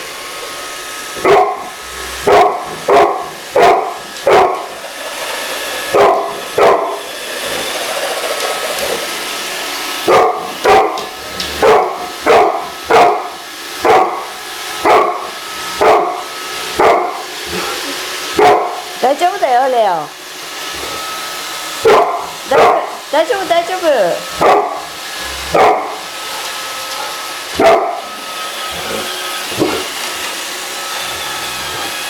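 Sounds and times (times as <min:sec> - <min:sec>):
robot vacuum whirring: 0:00.0 - 0:32.0
dog barking: 0:01.2 - 0:04.7, 0:05.9 - 0:07.0, 0:10.1 - 0:17.2, 0:18.4 - 0:18.9, 0:21.8 - 0:23.0, 0:24.4 - 0:24.9, 0:25.5 - 0:26.0, 0:27.5 - 0:28.1.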